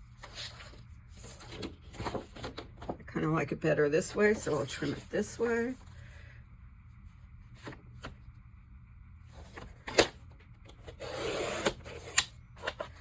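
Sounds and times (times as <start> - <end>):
blade cutting paper rasp: 10.9 - 12.2.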